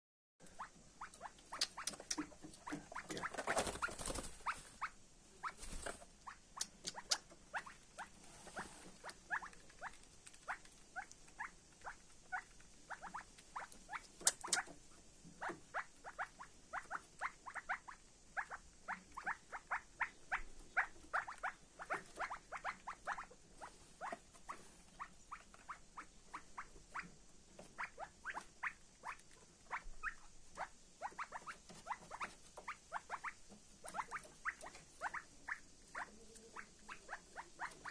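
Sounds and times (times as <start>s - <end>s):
rustling: 1.2s - 16.2s, 20.4s - 30.3s.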